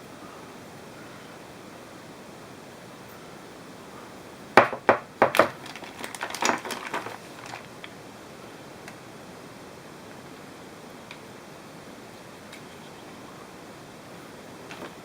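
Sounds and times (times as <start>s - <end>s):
steady hiss: 0.0s - 15.0s
hard objects clicking and knocking: 4.6s - 7.6s.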